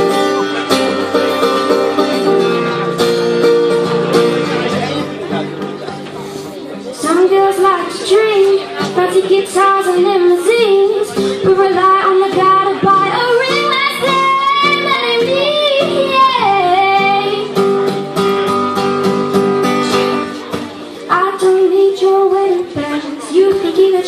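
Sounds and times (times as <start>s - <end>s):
acoustic guitar strumming: 0.0s - 24.0s
woman singing: 7.0s - 17.6s, 21.1s - 24.0s.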